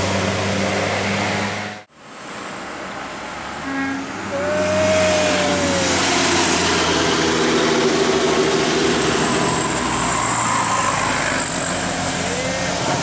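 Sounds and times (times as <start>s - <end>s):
diesel bus engine running: 4.2s - 13.0s.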